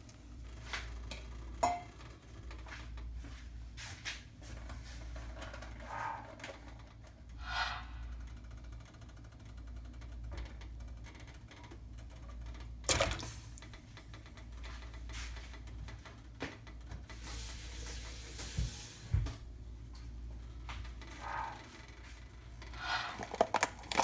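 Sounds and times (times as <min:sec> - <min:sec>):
steady low hum: 0:00.0 - 0:17.1.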